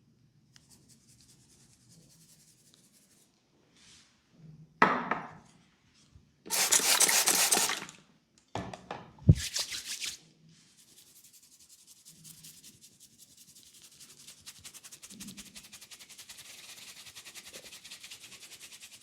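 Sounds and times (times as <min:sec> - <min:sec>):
hands rubbing over hair: 0:06.5 - 0:07.9, 0:09.3 - 0:10.2.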